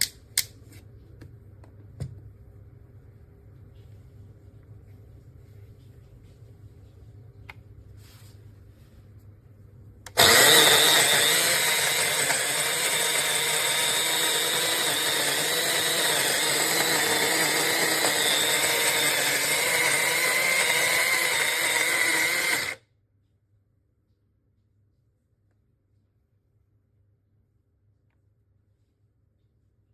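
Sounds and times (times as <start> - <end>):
electric coffee grinder running: 10.1 - 22.8.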